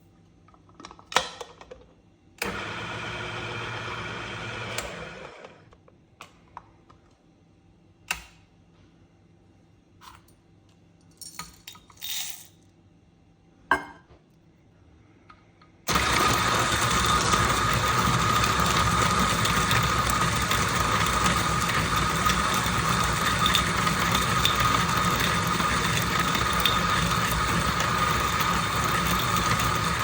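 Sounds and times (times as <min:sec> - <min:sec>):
coffee grinder rattling: 0:15.9 - 0:30.0.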